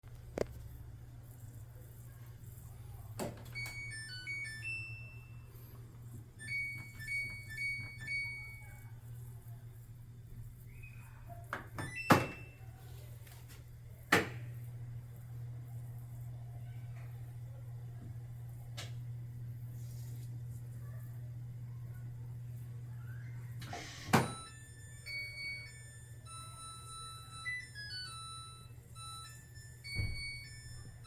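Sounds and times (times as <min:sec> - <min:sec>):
steady low hum: 0:00.0 - 0:31.0
washing machine beep melody: 0:03.5 - 0:08.9, 0:10.7 - 0:12.7, 0:23.0 - 0:31.0.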